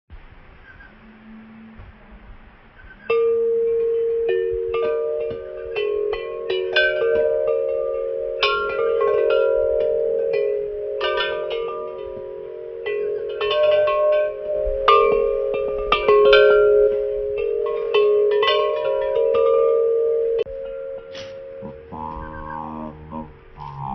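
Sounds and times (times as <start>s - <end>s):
church bells ringing: 1.0s - 23.9s.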